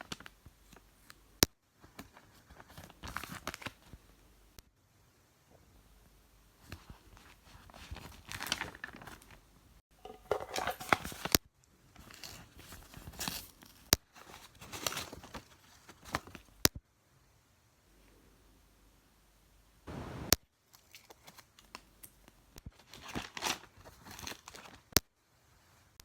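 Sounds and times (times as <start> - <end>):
paper crinkling and tearing: 1.9 - 3.8, 7.1 - 9.4, 12.0 - 16.5, 22.7 - 24.9.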